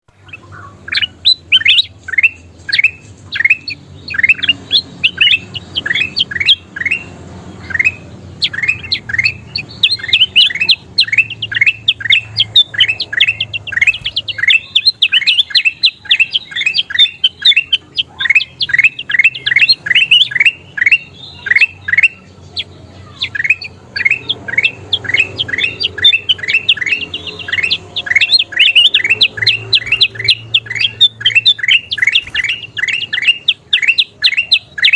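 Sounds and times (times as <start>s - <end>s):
bird whistling song: 0.2s - 34.9s.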